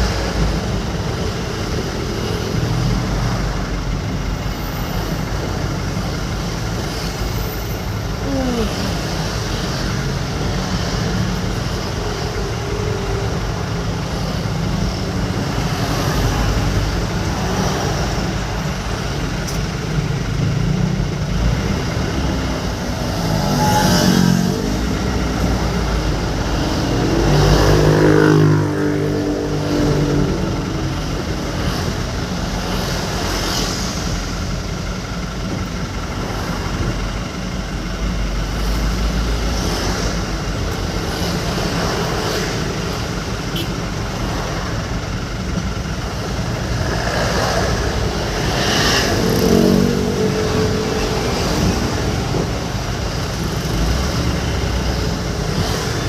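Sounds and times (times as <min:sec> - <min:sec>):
vehicle engine and road noise: 0:00.0 - 0:56.0.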